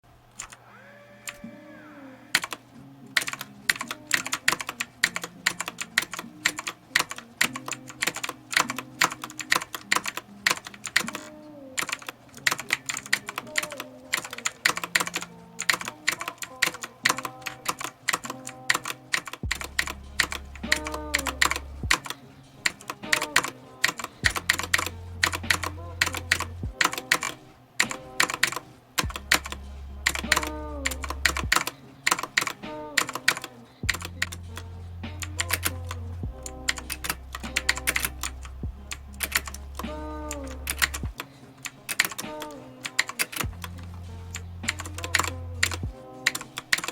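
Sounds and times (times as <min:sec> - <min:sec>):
mechanical keyboard key clicks: 0:02.4 - 0:02.6, 0:03.2 - 0:34.4, 0:35.2 - 0:35.9, 0:36.7 - 0:46.9
low hum: 0:19.4 - 0:21.9, 0:29.0 - 0:31.5, 0:33.8 - 0:41.2.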